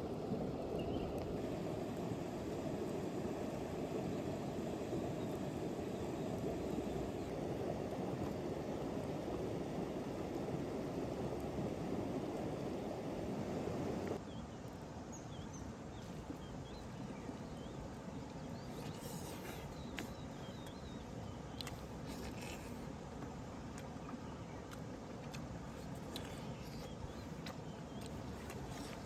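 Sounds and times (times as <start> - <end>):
faint bird chirps: 13.9 - 22.6.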